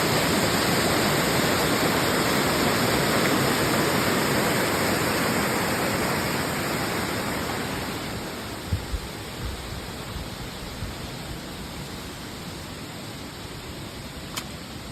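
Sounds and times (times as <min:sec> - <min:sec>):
heavy rain falling: 0:00.0 - 0:14.0.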